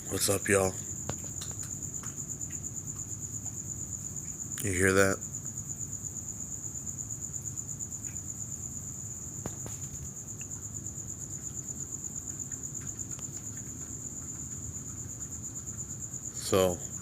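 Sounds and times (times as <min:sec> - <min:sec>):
crickets chirping: 0:00.0 - 0:17.0.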